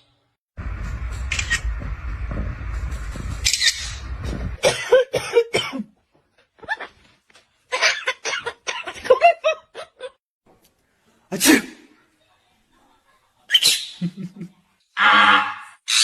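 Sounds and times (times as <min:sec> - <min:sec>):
steady rushing hiss: 0:00.6 - 0:04.6.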